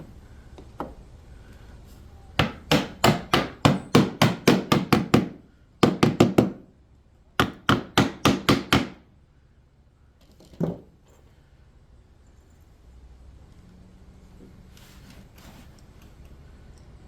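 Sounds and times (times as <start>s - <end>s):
hammer striking wood: 2.4s - 6.7s, 7.4s - 9.0s.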